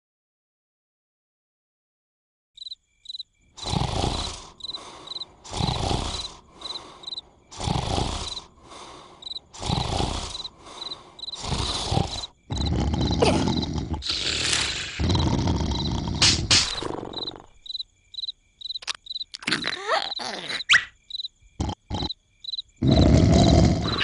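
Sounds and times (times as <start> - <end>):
cricket chirps: 2.6 - 24.0
cartoon snoring: 3.6 - 17.6, 21.6 - 22.2, 22.8 - 24.0.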